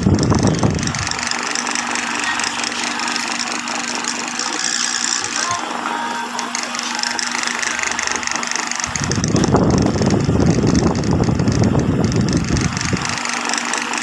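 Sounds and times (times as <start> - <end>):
sewing machine stitching rattle: 0.0 - 5.6, 6.4 - 14.0
sewing machine motor humming: 0.0 - 14.0.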